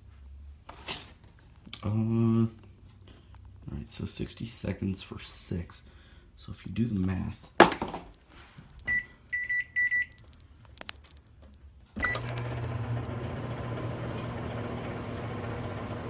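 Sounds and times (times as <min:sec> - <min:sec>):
keypad beeps: 0:08.9 - 0:10.2
microwave oven humming: 0:12.0 - 0:16.0.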